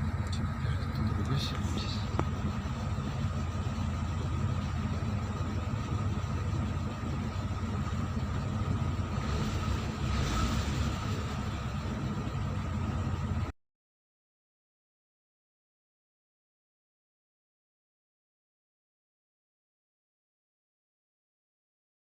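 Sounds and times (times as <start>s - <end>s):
car engine idling: 0.0s - 13.5s.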